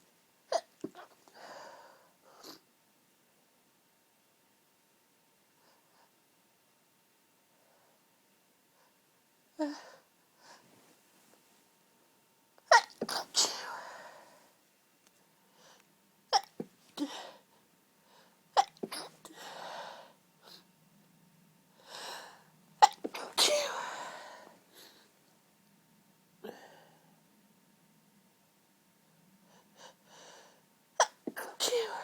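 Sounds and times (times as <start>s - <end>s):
woman stifling sneezes: 12.7s - 14.0s, 22.8s - 24.2s, 31.0s - 32.0s.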